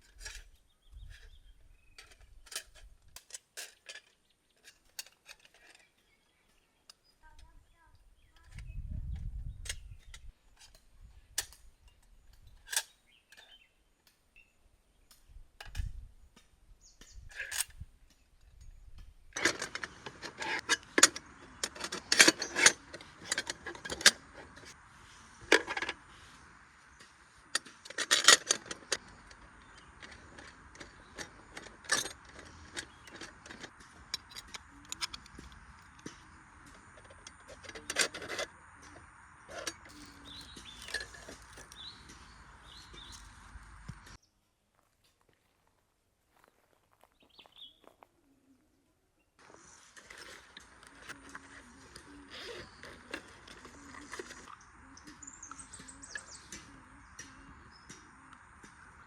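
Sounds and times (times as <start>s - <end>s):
small hard objects clinking: 25.4s - 44.2s.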